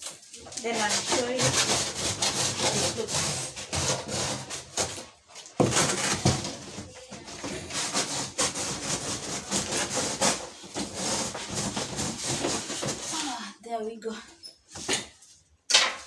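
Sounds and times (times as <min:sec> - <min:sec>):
blade sawing through cardboard: 0:00.6 - 0:06.8, 0:07.4 - 0:13.2.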